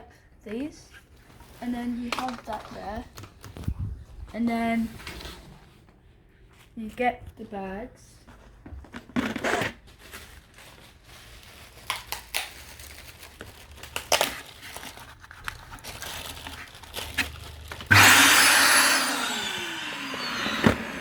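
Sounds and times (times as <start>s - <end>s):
plastic bags crinkling: 9.7s - 17.9s.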